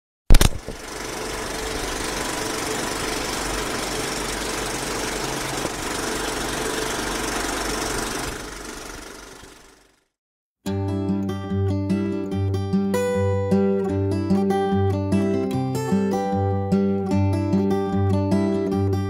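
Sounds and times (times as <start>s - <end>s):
mechanical engine drone: 0.3s - 10.1s.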